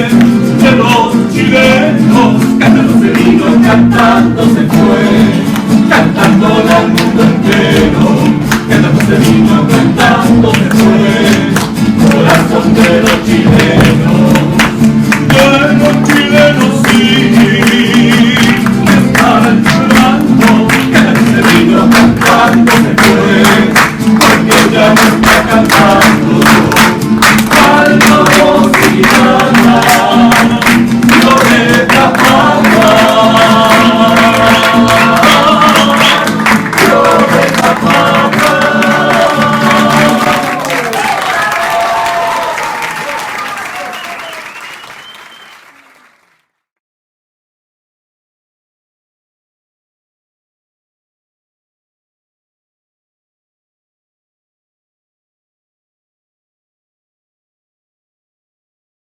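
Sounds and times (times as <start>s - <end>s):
strummed guitar: 0.0s - 41.0s
people singing: 0.0s - 44.6s.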